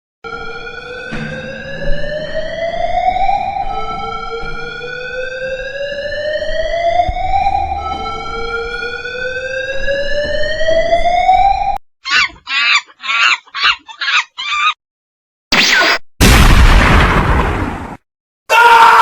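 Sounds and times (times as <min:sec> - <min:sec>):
rising siren-like tone: 0:00.2 - 0:11.8
loud noisy blast: 0:15.5 - 0:18.0.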